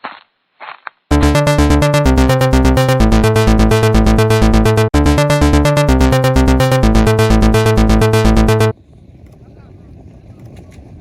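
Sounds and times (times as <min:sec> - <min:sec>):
electronic dance music: 0:01.1 - 0:08.7.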